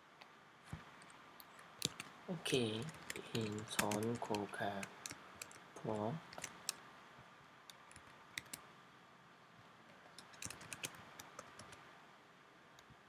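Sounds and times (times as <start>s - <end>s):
quiet room hiss: 0.0s - 13.0s
computer keyboard typing: 1.4s - 2.1s, 2.7s - 6.8s, 7.7s - 8.6s, 10.2s - 11.8s.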